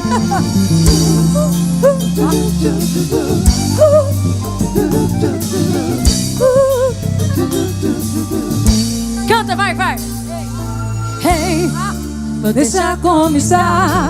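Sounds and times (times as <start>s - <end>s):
drum kit: 0.0s - 10.6s
wavering lead melody: 0.0s - 12.7s
steady bass notes: 0.0s - 14.0s.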